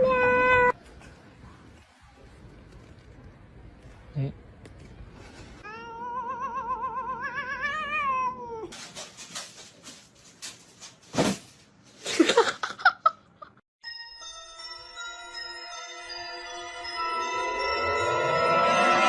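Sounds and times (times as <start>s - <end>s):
cat yowling: 5.6s - 8.8s.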